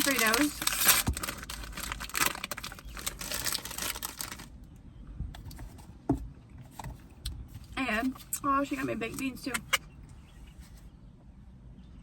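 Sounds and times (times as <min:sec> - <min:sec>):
chip bag crinkling: 0:00.0 - 0:04.6.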